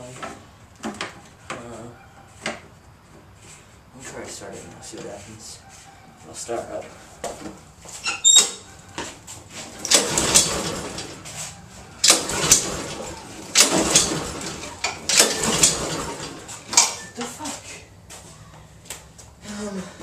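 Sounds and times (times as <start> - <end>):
lawn mower recoil starter pulls: 9.6 - 11.4, 12.0 - 17.2
engine cranking: 9.6 - 17.2.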